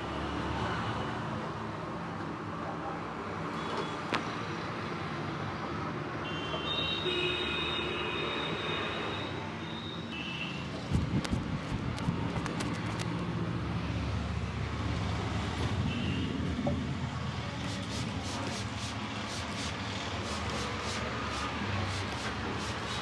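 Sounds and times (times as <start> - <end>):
traffic rumble: 10.6 - 15.5, 16.7 - 23.0.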